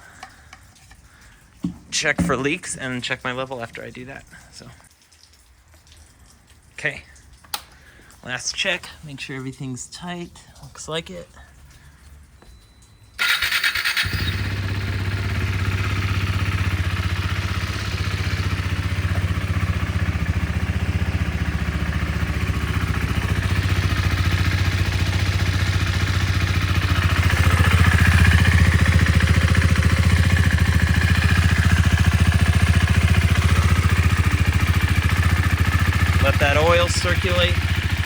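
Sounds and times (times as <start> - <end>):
motorcycle engine idling: 13.2 - 38.0.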